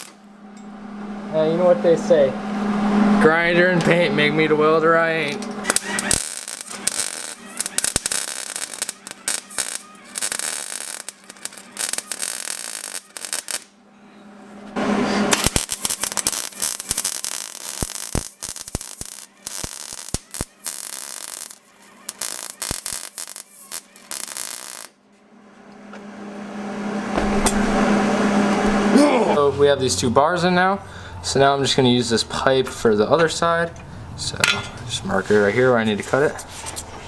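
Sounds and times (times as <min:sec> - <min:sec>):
arc welding crackling: 0:00.0 - 0:00.3, 0:05.2 - 0:13.8, 0:14.8 - 0:25.0, 0:25.9 - 0:29.1
steady hum: 0:00.0 - 0:12.2, 0:12.9 - 0:33.0.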